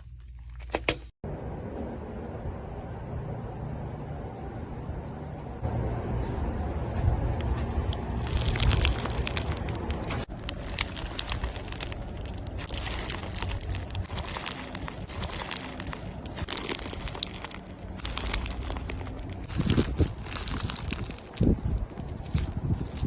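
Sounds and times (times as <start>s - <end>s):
low rumble: 1.2s - 23.0s
dense irregular clicking and crackling: 7.8s - 23.0s.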